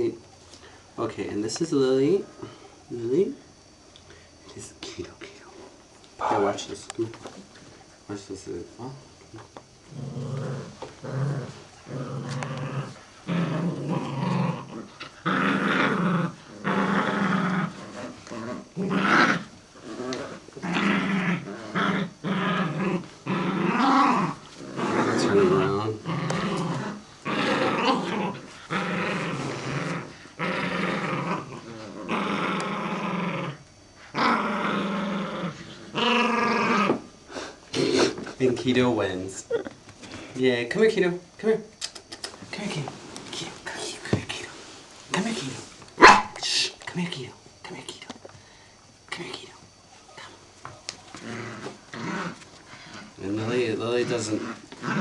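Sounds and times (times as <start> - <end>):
dogs growling in play: 9.8 - 38.4, 49.6 - 55.0.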